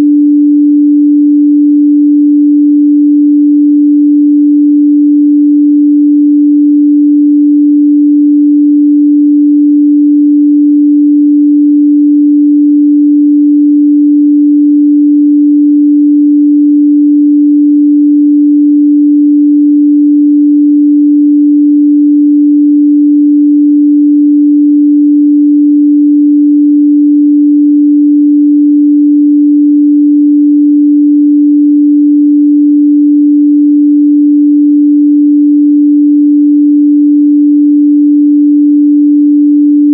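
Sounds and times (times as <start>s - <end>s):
sine-wave test tone: 0.0s - 39.9s.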